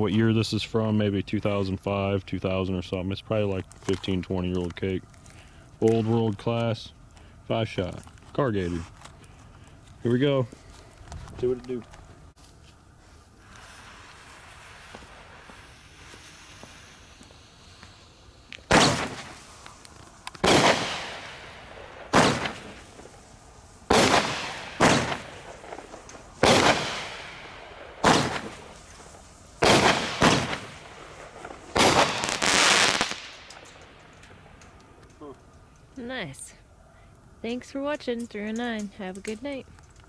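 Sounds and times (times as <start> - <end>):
fireworks fuse hissing: 0.2 - 39.6
fireworks bangs: 12.9 - 35.1.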